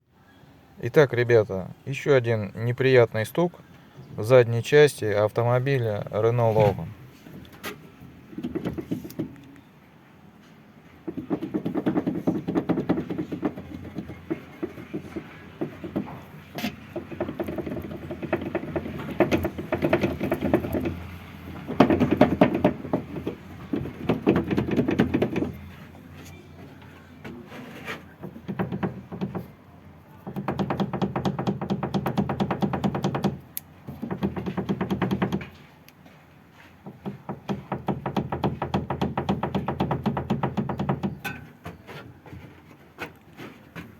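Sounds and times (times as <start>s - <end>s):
rapid knocking and rattling: 7.7s - 9.4s, 11.0s - 25.8s, 28.1s - 29.5s, 30.2s - 35.6s, 36.8s - 41.5s.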